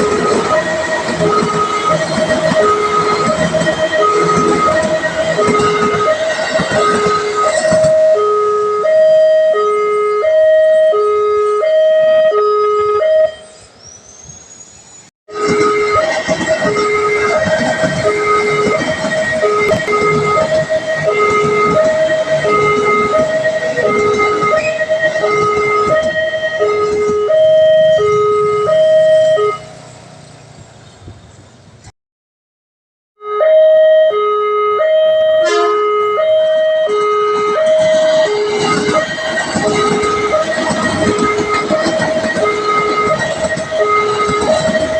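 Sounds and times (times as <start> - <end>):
level crossing two-tone alarm: 0.0 - 13.6, 15.3 - 29.7, 33.2 - 44.9
passing train rumbling: 0.0 - 31.9, 34.9 - 44.9.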